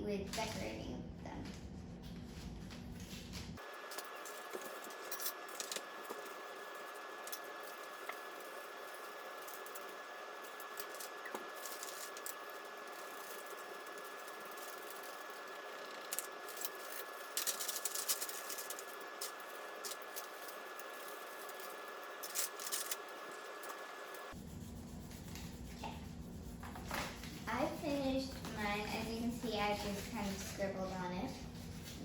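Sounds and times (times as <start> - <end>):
markers scribbling on paper: 4.0 - 32.0.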